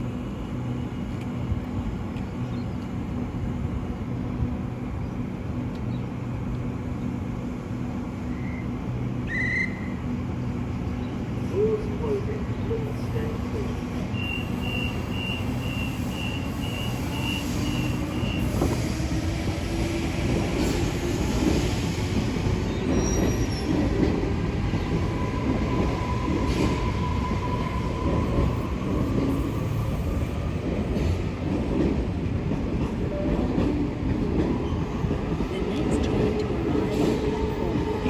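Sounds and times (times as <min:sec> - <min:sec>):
train rumbling: 0:00.0 - 0:38.0
train wheel squeal: 0:13.9 - 0:30.4.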